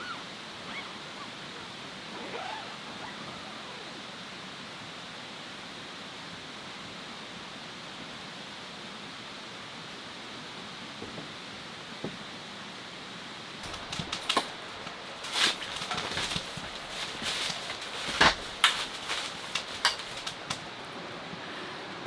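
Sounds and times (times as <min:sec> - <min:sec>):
steady hiss: 0:13.6 - 0:22.0.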